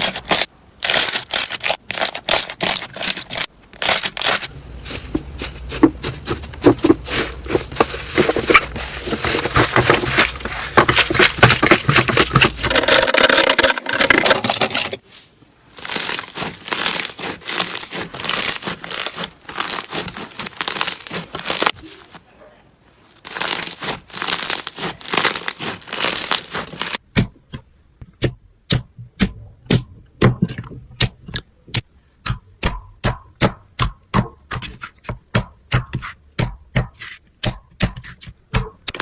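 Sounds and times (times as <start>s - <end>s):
crunchy slime crackling: 0.0s - 14.2s, 15.7s - 22.2s, 23.1s - 27.0s.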